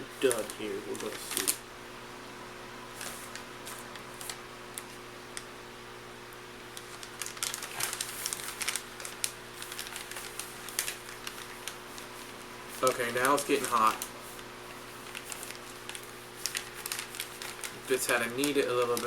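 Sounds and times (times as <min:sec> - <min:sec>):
plastic bag crinkling: 0:00.2 - 0:01.6, 0:06.7 - 0:19.0.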